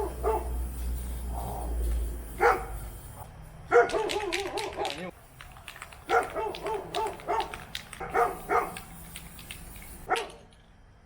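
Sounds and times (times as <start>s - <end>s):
dog barking and whining: 0.0s - 0.6s, 2.4s - 2.8s, 3.7s - 5.0s, 6.1s - 8.8s.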